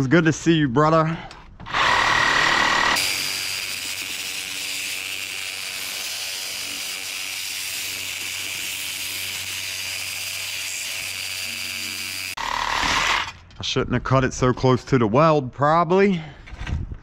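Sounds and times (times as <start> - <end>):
reciprocating saw cutting metal: 1.7 - 13.4.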